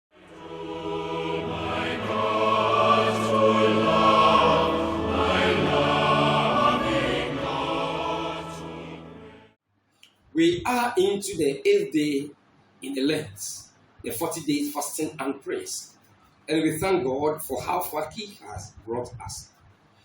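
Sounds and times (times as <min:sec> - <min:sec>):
choral voices singing: 0:00.1 - 0:09.5.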